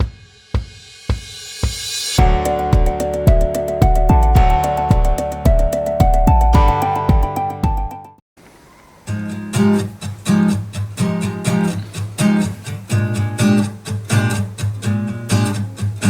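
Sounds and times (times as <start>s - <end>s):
strummed acoustic guitar: 2.2s - 7.2s, 9.0s - 16.0s
deep bass notes: 2.2s - 8.0s.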